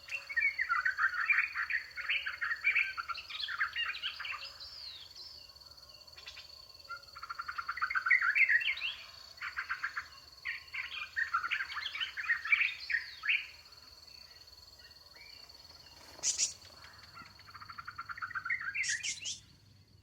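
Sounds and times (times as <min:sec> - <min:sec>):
high chirping and twittering: 0:15.9 - 0:19.6.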